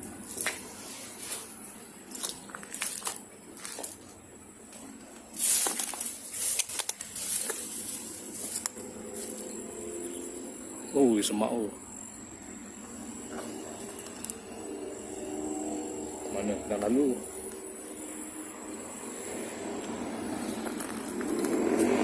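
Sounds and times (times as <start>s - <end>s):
footsteps crunching over debris: 0.0s - 9.6s, 20.4s - 22.0s
high insect trill: 0.0s - 22.0s
brushing through vegetation: 5.2s - 9.5s.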